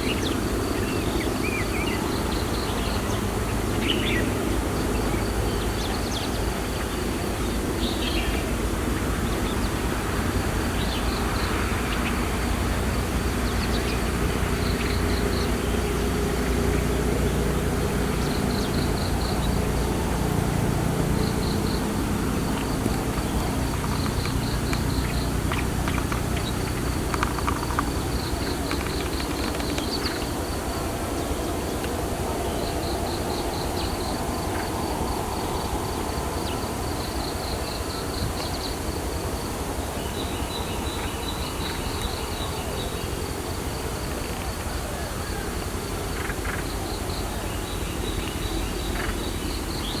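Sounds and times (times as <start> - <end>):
insects chirping in trills: 0.0 - 50.0
low outdoor rumble: 2.1 - 37.3.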